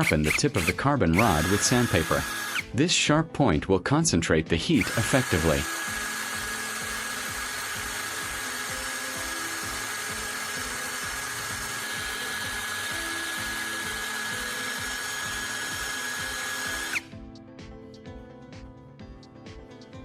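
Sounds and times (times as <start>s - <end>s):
power drill whining: 0.0s - 2.7s, 4.7s - 17.2s
rod grinding on sandpaper: 4.8s - 14.2s.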